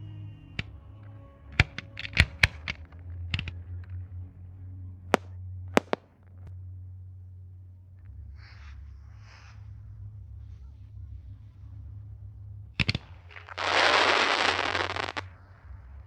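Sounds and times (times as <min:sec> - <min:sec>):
fireworks cracking and banging: 0:05.2 - 0:06.1, 0:12.8 - 0:15.3.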